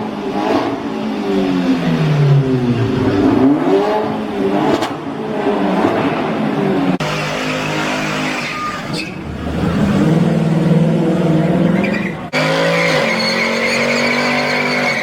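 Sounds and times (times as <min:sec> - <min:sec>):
car engine at high revs: 0:00.0 - 0:15.0
tyres squealing on tarmac: 0:07.1 - 0:09.2, 0:11.8 - 0:15.0.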